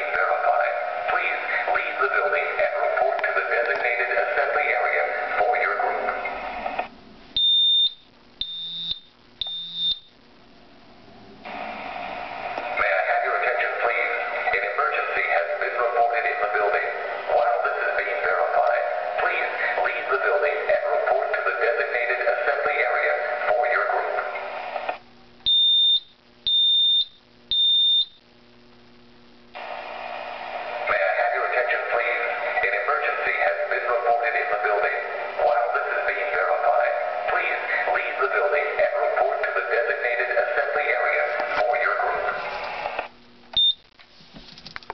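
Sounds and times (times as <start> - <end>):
recorded voice message: 0.0 - 6.9, 12.6 - 25.0, 30.7 - 43.1
smoke alarm high-pitched beeps: 7.4 - 10.1, 25.4 - 28.2, 43.6 - 43.9.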